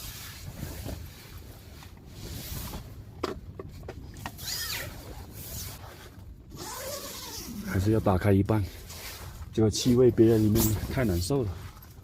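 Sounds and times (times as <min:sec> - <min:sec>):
wind: 0:00.0 - 0:12.0
short squeak: 0:04.4 - 0:05.0.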